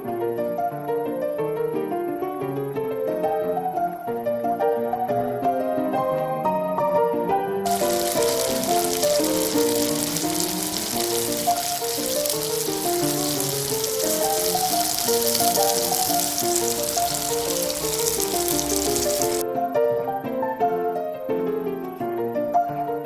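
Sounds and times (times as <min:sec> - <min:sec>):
crackling hiss: 0:07.6 - 0:19.4.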